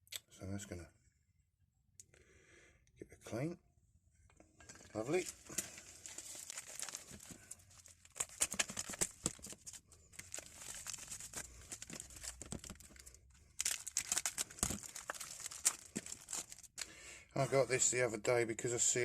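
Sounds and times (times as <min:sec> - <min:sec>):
plastic packaging crinkling and tearing: 0:04.8 - 0:16.9.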